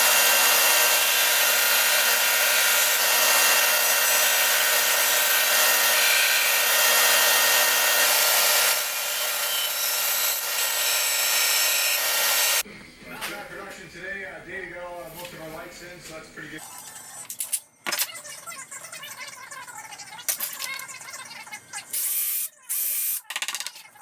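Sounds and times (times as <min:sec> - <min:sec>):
band saw motor whine: 0:00.0 - 0:16.6.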